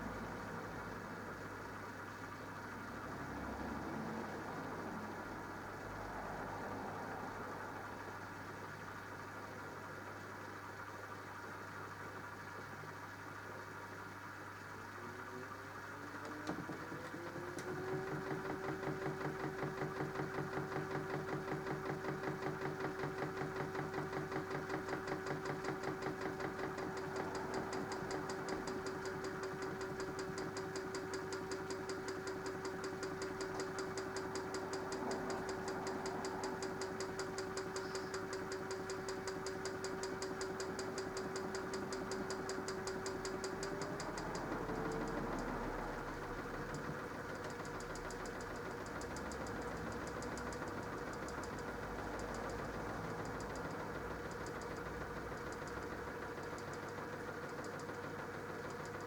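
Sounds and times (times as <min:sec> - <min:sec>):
washing machine motor humming: 0:14.4 - 0:59.0.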